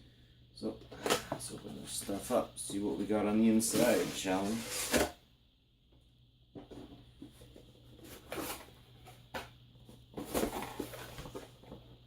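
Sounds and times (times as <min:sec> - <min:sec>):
cardboard packaging rustling: 0:10.1 - 0:11.8.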